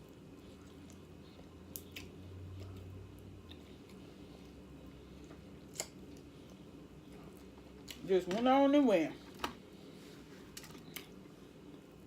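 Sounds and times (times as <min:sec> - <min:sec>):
person chewing: 0:00.0 - 0:08.0, 0:10.4 - 0:11.2.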